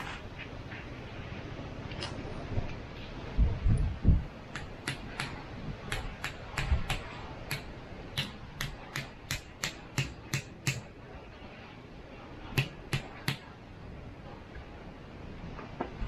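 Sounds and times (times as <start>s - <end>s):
sharp knocks: 4.5s - 10.9s, 12.6s - 13.5s.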